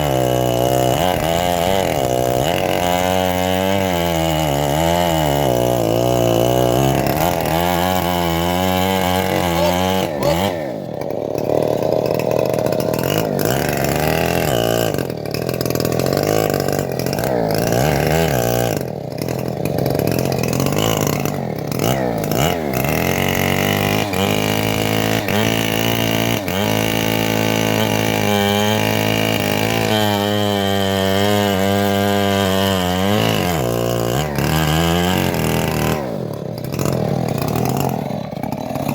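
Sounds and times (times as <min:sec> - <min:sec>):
bandsaw mill engine sawing log: 0:00.0 - 0:38.9.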